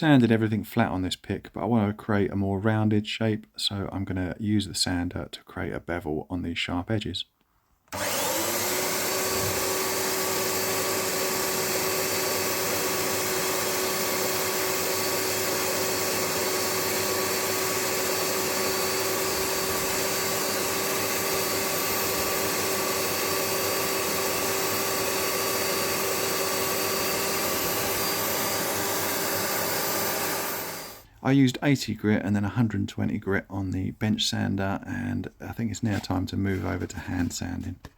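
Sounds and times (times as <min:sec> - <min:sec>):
bench sander whining: 0:07.9 - 0:31.1.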